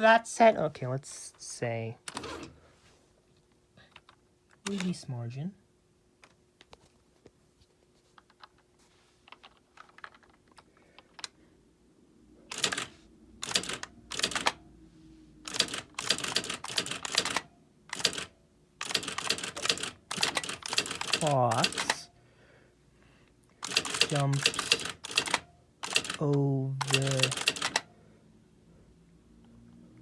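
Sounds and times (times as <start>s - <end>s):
typewriter print mechanism rattling: 12.5s - 14.6s, 15.5s - 22.1s, 23.6s - 27.9s
typewriter key clicks: 26.8s - 27.8s.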